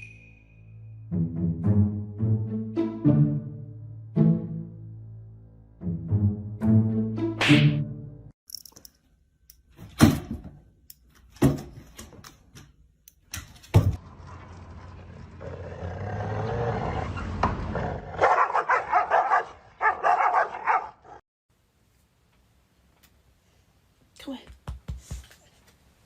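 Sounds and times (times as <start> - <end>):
dog barking: 18.2 - 21.2.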